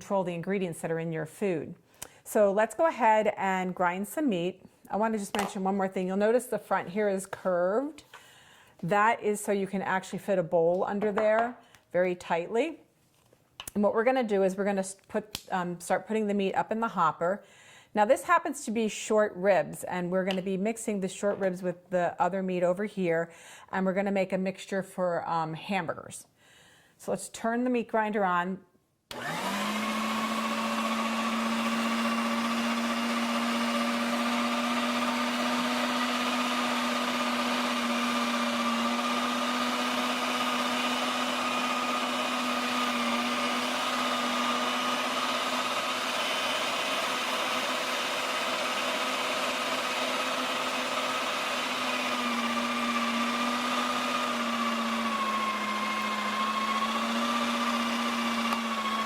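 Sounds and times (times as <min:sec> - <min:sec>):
electric meat grinder motor humming: 0:29.1 - 0:59.0.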